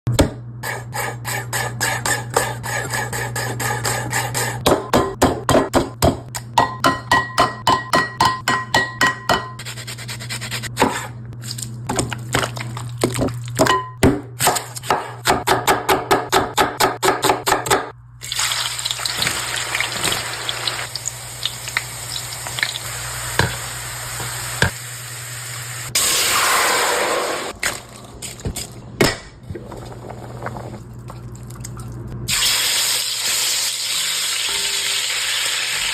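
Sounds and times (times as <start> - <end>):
food frying hiss: 18.2 - 27.5, 32.3 - 35.9.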